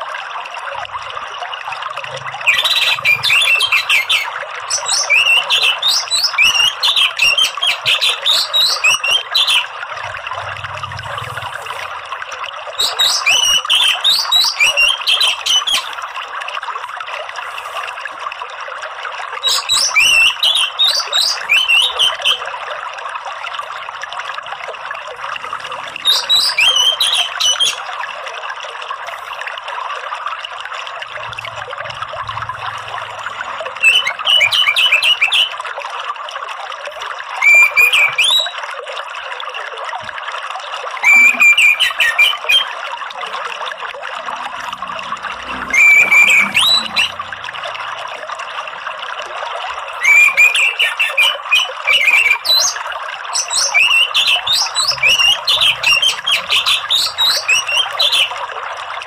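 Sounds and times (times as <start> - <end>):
flowing water: 0.0 - 59.0
bird twittering song: 2.1 - 11.9, 12.7 - 15.9, 19.4 - 22.4, 26.0 - 27.9, 33.2 - 35.6, 37.4 - 38.6, 45.5 - 47.2, 53.4 - 58.4.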